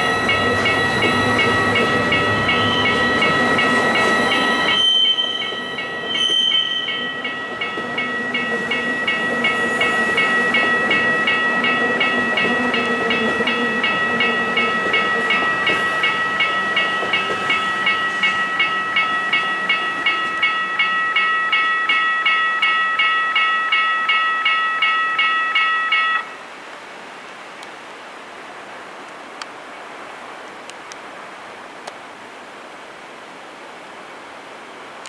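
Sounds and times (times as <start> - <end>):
train whine: 0.0 - 27.1.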